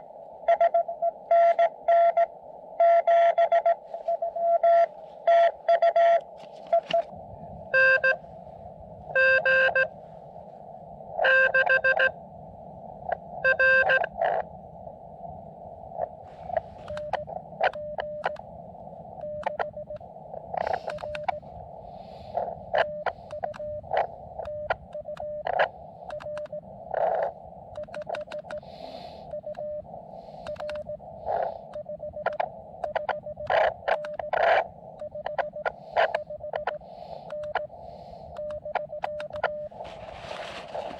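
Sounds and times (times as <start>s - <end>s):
radio receiver hiss: 0.0s - 40.9s
morse code tones: 0.5s - 7.1s, 7.7s - 8.2s, 9.1s - 10.0s, 11.2s - 12.2s, 13.4s - 14.2s, 16.5s - 18.4s, 19.2s - 20.0s, 22.3s - 40.9s.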